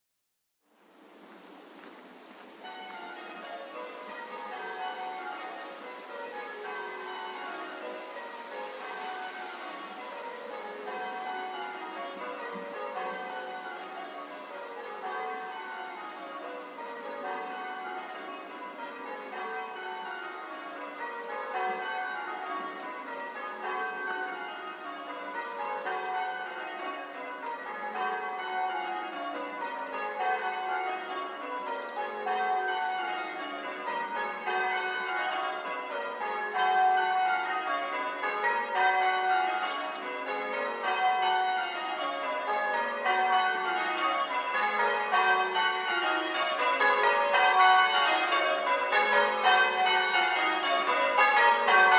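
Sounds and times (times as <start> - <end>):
church bells ringing a peal: 2.6 - 51.9.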